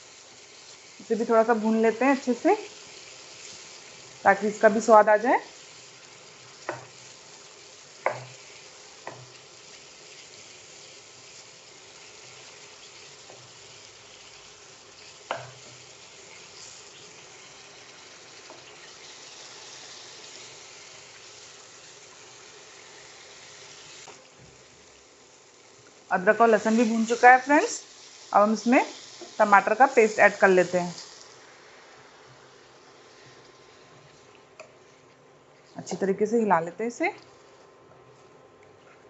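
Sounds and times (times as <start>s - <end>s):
onion sizzling in hot oil: 0.0s - 35.0s.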